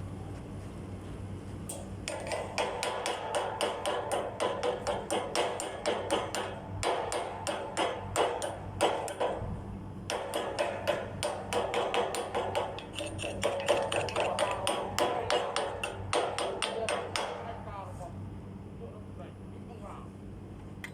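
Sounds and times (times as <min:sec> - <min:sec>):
hammer striking metal: 0:01.7 - 0:09.4, 0:10.1 - 0:17.5.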